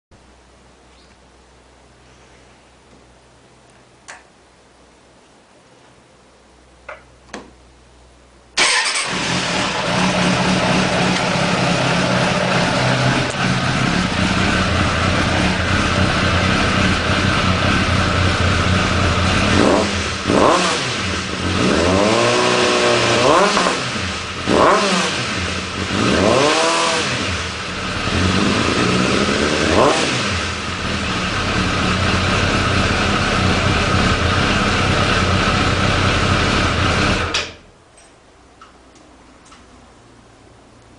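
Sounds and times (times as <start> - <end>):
motorcycle engine idling: 9.2 - 21.6, 30.4 - 37.2.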